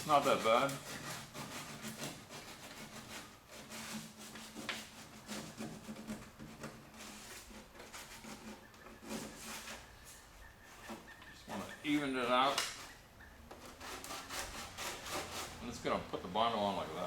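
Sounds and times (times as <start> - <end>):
hand sanding plastic: 0.0 - 17.0.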